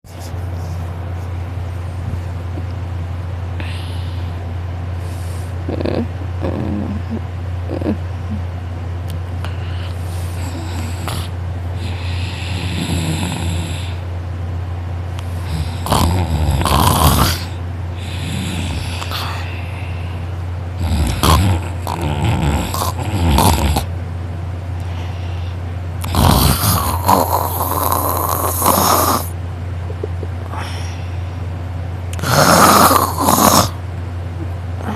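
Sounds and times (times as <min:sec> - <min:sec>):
soft breathing: 0:03.6 - 0:05.7, 0:24.8 - 0:25.7
loud rasping snores: 0:10.3 - 0:14.0, 0:15.4 - 0:19.5, 0:20.8 - 0:23.9, 0:26.0 - 0:29.3, 0:32.2 - 0:33.8.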